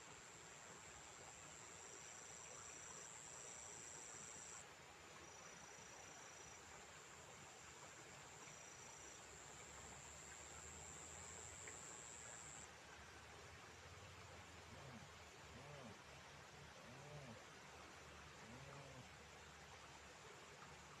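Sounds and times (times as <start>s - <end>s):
faint hiss: 0.0s - 21.0s
lower insect trill: 9.9s - 12.6s.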